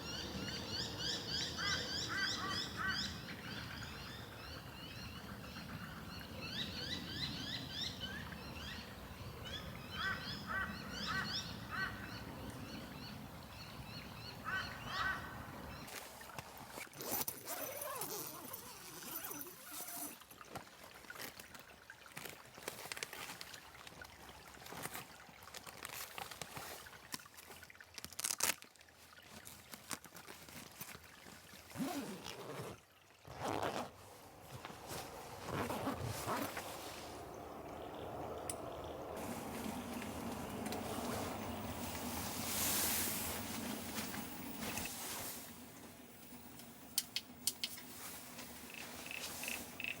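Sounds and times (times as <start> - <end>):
liquid trickling: 15.9 - 50.0.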